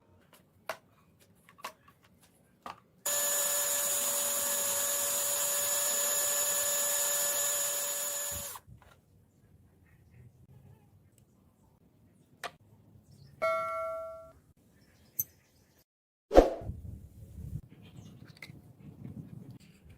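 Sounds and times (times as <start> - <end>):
power tool whining: 3.1 - 8.6.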